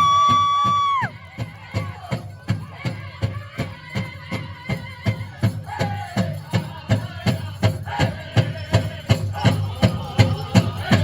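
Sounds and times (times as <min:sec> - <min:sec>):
voices singing: 0:00.0 - 0:11.0.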